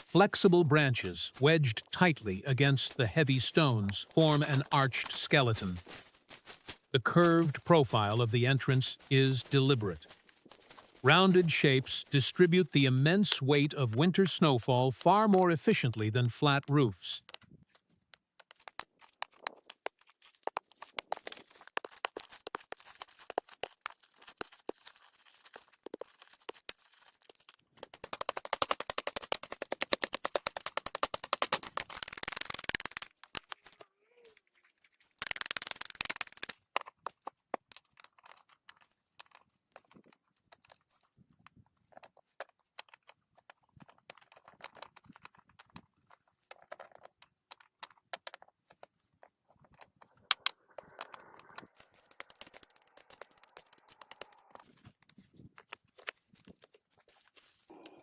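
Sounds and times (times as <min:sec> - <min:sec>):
branches rustling and crackling: 0:00.7 - 0:13.6, 0:50.0 - 0:58.0.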